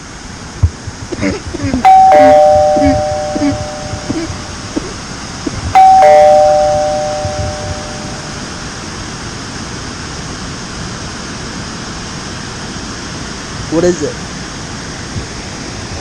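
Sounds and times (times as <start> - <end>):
two-note ding-dong chime: 1.8 - 4.8, 5.8 - 8.4.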